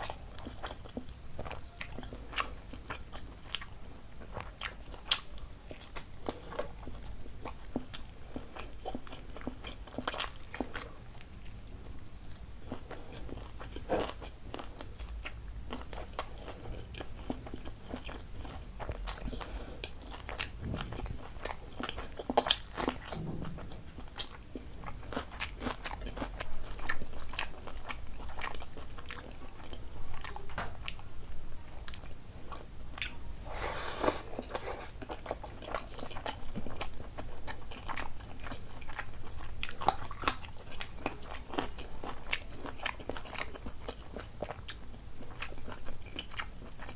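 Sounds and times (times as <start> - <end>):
person chewing and crunching: 0.0 - 31.1, 31.7 - 46.9.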